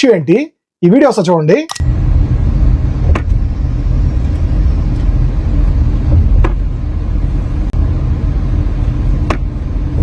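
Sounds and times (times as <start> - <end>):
road and engine rumble: 1.8 - 10.0.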